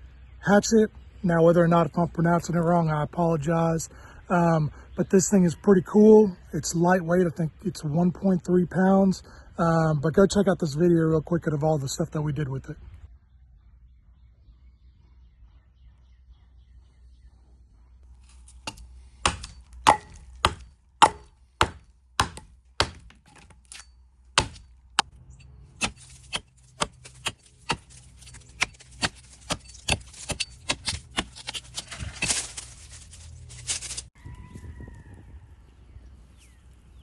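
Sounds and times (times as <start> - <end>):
hatchet chopping wood: 18.5 - 25.1, 25.8 - 32.5.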